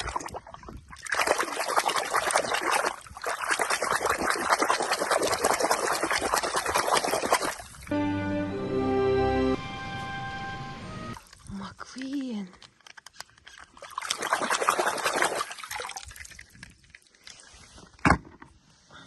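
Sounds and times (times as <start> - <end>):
water pouring and splashing: 0.0 - 7.9, 11.2 - 12.4, 13.4 - 17.8
music: 7.9 - 11.2.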